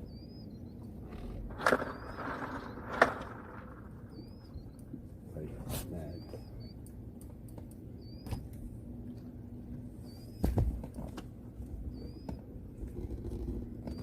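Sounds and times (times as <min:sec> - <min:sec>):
bird chirping: 0:00.0 - 0:06.9, 0:08.0 - 0:08.5, 0:10.0 - 0:10.6, 0:11.9 - 0:12.4.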